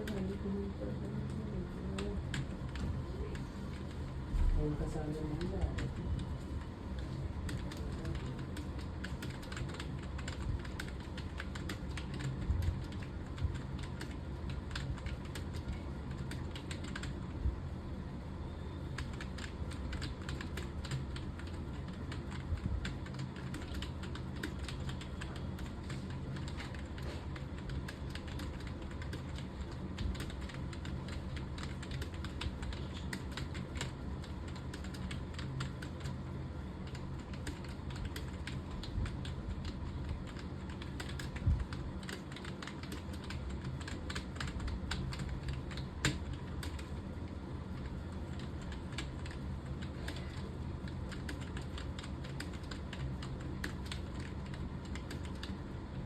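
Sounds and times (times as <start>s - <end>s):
low steady hum: 0.0s - 56.0s.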